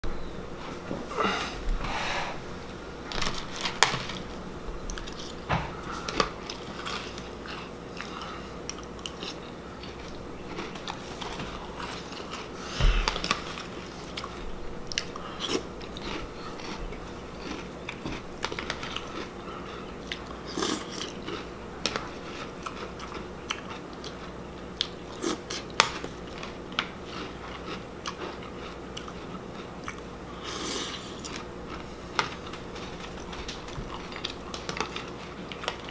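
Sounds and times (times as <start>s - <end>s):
crunchy chewing of cereal: 3.1s - 35.9s.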